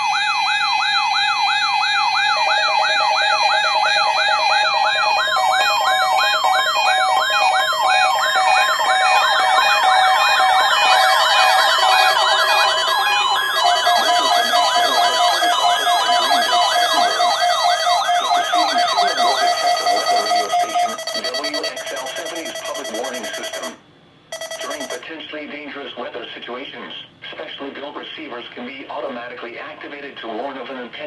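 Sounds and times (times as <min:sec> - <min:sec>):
electronic sirens sweeping: 0:00.0 - 0:25.0
high-pitched beeping: 0:01.6 - 0:25.0
steady tones: 0:02.7 - 0:25.0.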